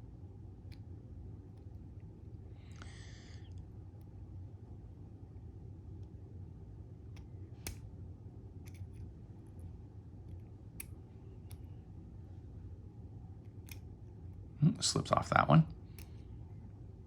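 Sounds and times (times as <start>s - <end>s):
low steady hum: 0.0s - 17.0s
faint lock pick clicks: 8.6s - 9.1s, 10.2s - 11.7s, 13.4s - 13.9s.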